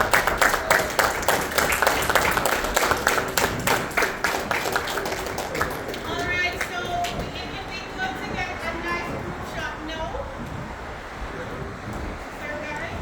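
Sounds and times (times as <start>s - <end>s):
people clapping: 0.0s - 8.1s.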